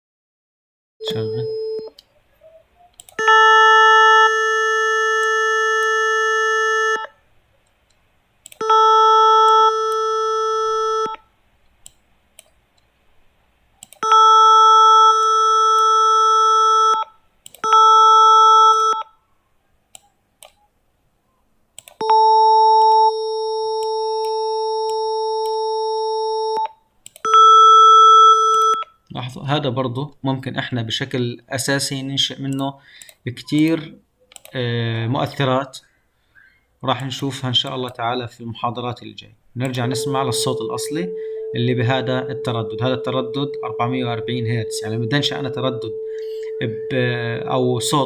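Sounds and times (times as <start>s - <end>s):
synthetic electronic tone: 39.8s - 48.0s.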